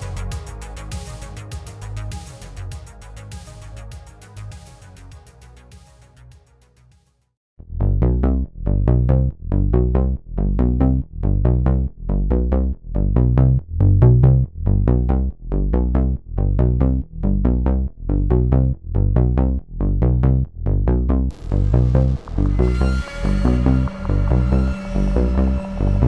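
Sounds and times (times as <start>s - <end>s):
pulsing synthesizer chord: 0.0s - 5.6s, 21.3s - 26.0s.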